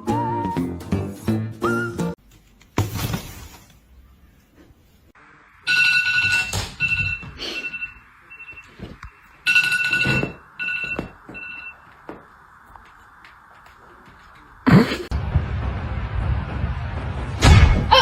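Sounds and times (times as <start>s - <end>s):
electronic ringtone beeps: 5.7s - 11.8s.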